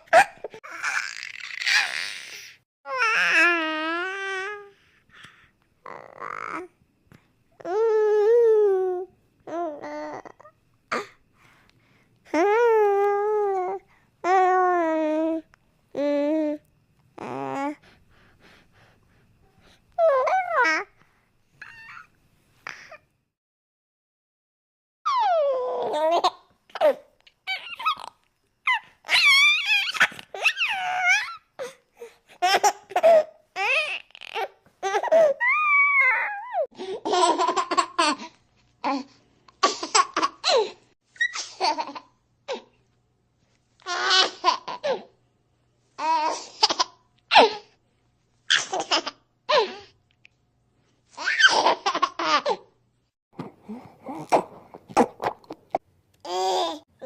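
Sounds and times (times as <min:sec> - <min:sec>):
cartoon baby giggles and babbles: 0:00.0 - 0:04.6, 0:25.1 - 0:31.5, 0:33.6 - 0:36.8
cartoon baby vocal burst: 0:00.1 - 0:02.6
breaths: 0:04.7 - 0:05.7, 0:10.9 - 0:12.3, 0:13.8 - 0:14.2, 0:17.8 - 0:20.0, 0:21.0 - 0:21.4, 0:53.4 - 0:54.2.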